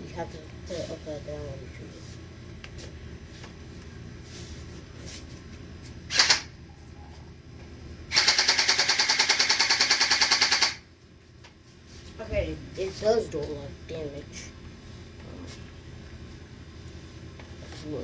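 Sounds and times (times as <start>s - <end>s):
toy gel blaster shots: 6.1s - 6.5s, 8.1s - 10.8s.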